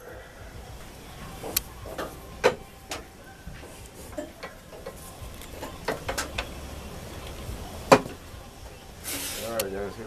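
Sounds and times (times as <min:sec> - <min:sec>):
low steady hum: 0:00.0 - 0:09.2
clicks and knocks of wood and tools: 0:01.4 - 0:06.5.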